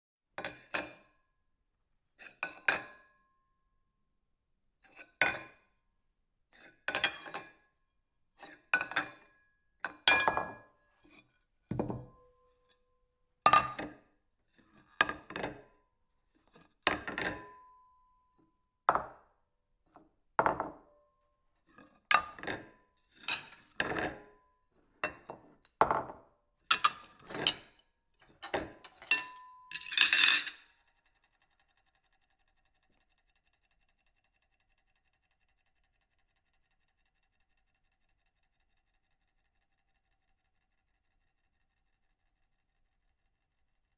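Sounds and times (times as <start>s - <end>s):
ceramic plate clinking: 28.2s - 30.6s.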